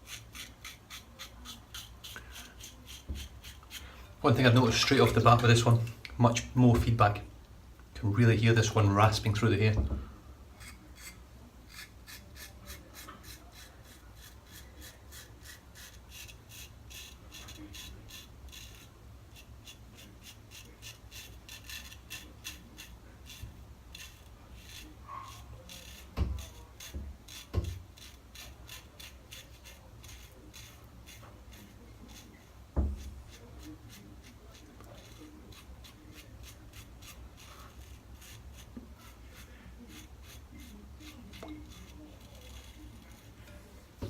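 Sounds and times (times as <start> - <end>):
razor rasping through stubble: 0.0 - 5.4, 10.6 - 43.6.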